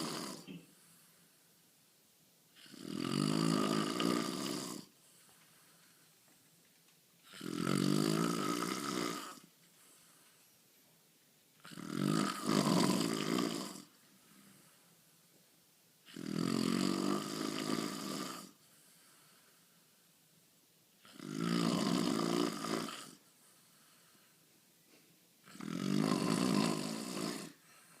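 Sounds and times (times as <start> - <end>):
man snoring: 0.0 - 0.6, 2.6 - 5.0, 7.2 - 9.5, 11.6 - 14.0, 16.0 - 18.6, 21.0 - 23.2, 25.4 - 27.6.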